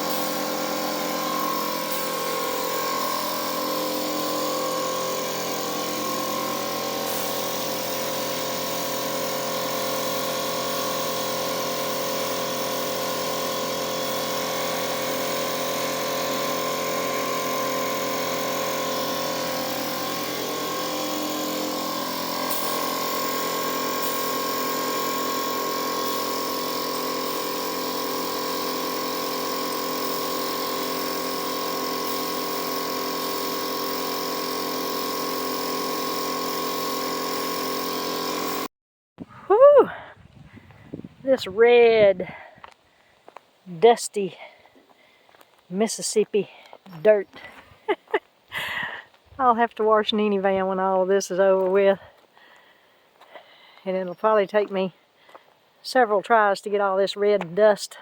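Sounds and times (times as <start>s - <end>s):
machine motor humming: 0.0s - 38.7s.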